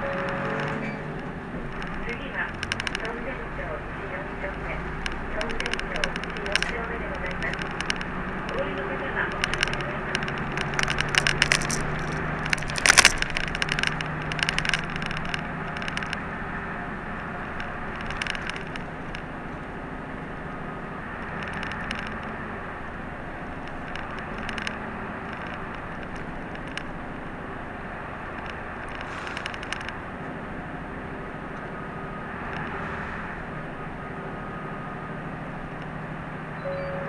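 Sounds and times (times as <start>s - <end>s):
cabin clicks and rattles: 0.0s - 16.2s
bus engine and tyres drone: 0.0s - 37.0s.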